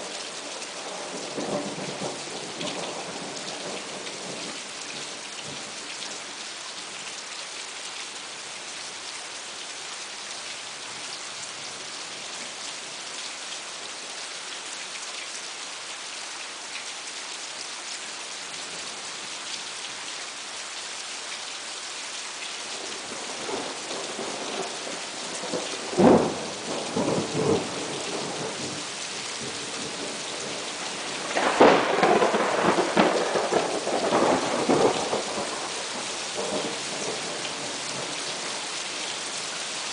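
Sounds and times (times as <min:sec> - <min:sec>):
steady rain: 0:00.0 - 0:39.9
thunder rumbling: 0:29.4 - 0:38.6.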